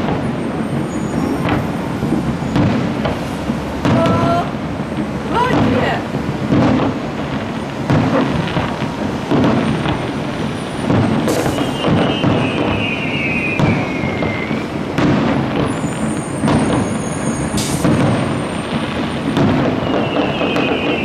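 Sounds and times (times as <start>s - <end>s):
continuous rumble: 0.0s - 11.9s
fireworks bursting booms: 0.0s - 21.0s.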